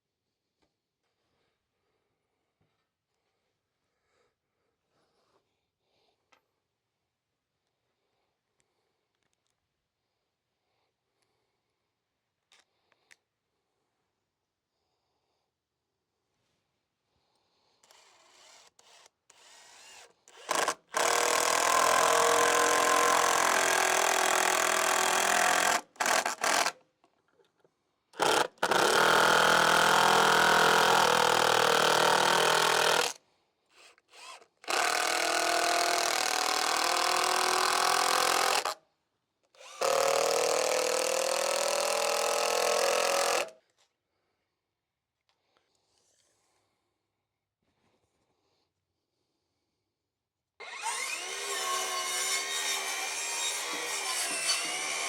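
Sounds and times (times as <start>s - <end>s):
electric drill boring into wood: 17.9s - 26.8s, 28.2s - 33.2s, 34.1s - 38.8s, 39.6s - 43.5s, 50.6s - 55.0s.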